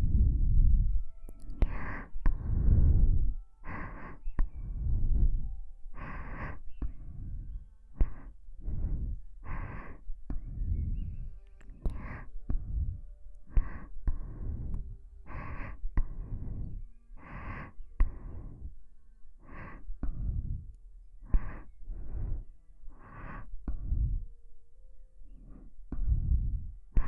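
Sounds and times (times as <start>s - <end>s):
slow close breathing: 0.0s - 27.0s
lip clicks: 1.3s - 2.1s.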